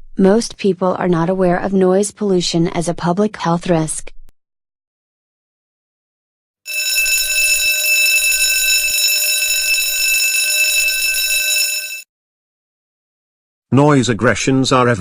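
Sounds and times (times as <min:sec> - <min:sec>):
alarm bell ringing: 0:06.7 - 0:12.1.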